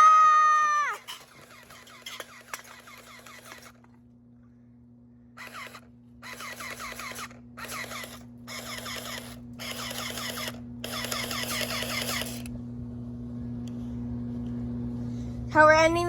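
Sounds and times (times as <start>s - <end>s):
water gun pump pulsing: 0.9s - 3.8s, 5.4s - 12.5s.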